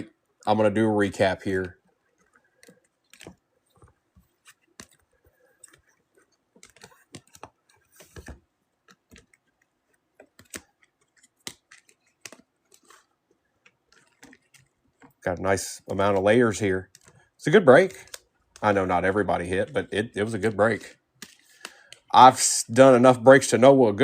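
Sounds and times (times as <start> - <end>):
cards clicking and tapping: 0.5 - 15.2, 15.8 - 22.1
cards rustling slide: 2.2 - 15.2, 19.6 - 22.1.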